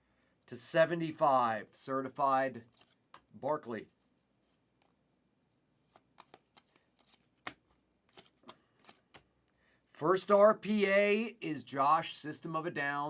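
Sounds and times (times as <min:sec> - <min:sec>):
trading cards clicking and flicking: 0:05.9 - 0:09.3.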